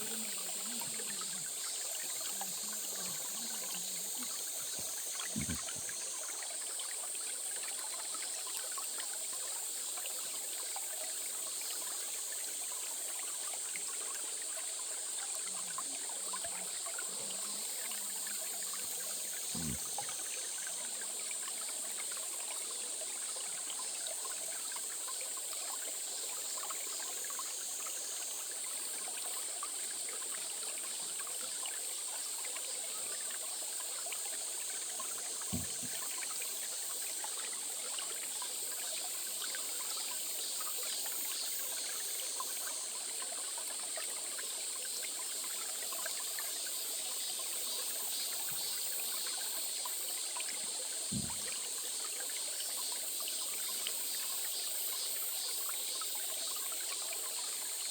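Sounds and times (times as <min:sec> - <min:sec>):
steady high hiss: 0:00.0 - 0:06.0
stream trickling over stones: 0:00.0 - 0:57.9
brief low thumps: 0:05.4 - 0:05.7, 0:35.6 - 0:36.0, 0:51.1 - 0:51.4.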